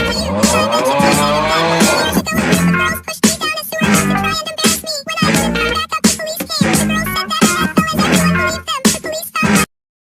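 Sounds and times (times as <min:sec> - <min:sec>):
pitched voice-like sounds: 0:00.0 - 0:03.1
chopped music snippets: 0:00.0 - 0:09.6.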